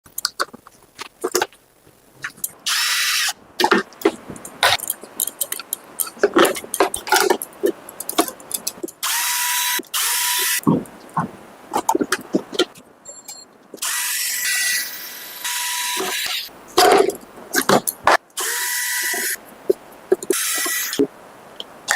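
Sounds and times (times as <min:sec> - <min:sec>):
small power drill running: 0:13.8 - 0:16.4.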